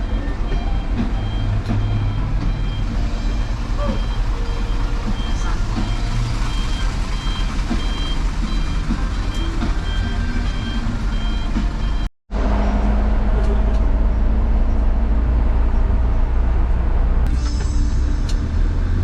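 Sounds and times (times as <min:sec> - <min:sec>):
reversing alarm beeping: 0:00.0 - 0:12.1
diesel engine rumble: 0:00.0 - 0:19.0.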